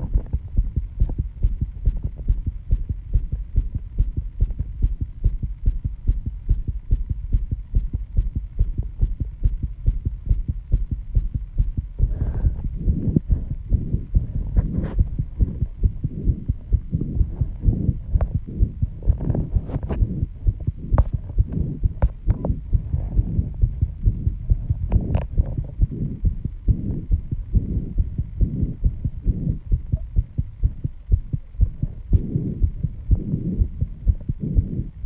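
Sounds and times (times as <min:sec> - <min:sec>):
fast heartbeat thumping: 0:00.0 - 0:34.8
person breathing: 0:12.0 - 0:14.8.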